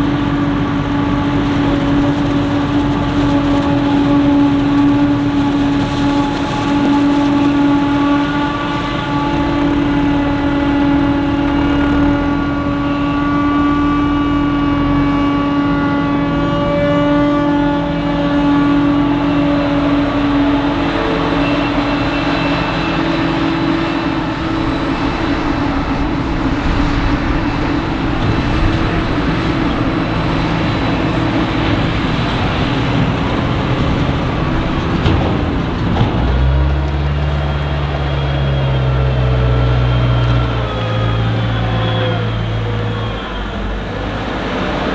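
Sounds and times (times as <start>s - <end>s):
machinery whine: 0.0s - 44.9s
rushing engine noise: 0.0s - 44.9s.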